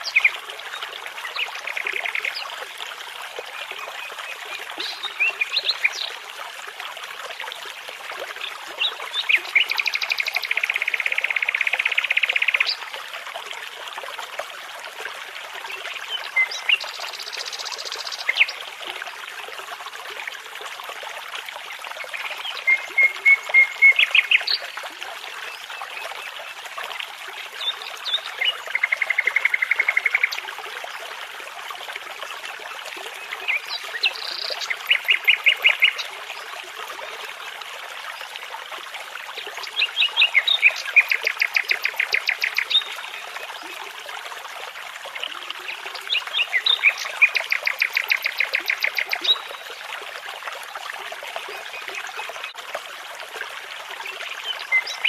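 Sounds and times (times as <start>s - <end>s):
babbling brook: 0.0s - 55.0s
songbirds singing: 39.6s - 43.2s, 46.0s - 49.7s.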